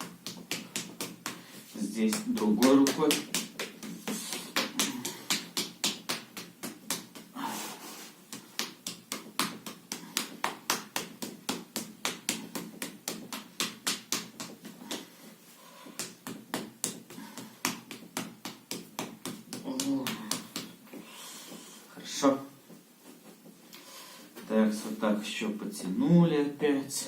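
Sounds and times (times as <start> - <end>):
hand slapping on arm: 0.0 - 7.4, 8.2 - 21.7.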